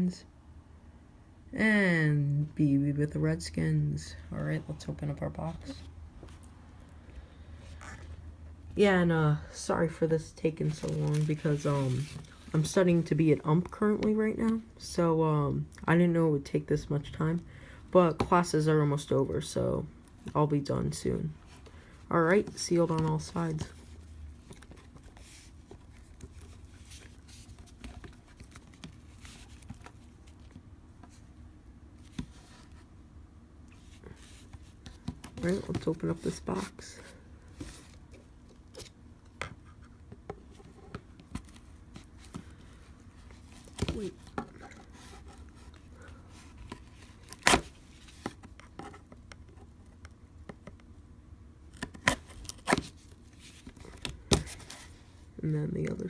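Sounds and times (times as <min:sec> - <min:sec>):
rustling cardboard and plastic wrap: 0:10.6 - 0:13.1, 0:23.1 - 0:31.2
cardboard box being opened by hand: 0:10.7 - 0:12.4.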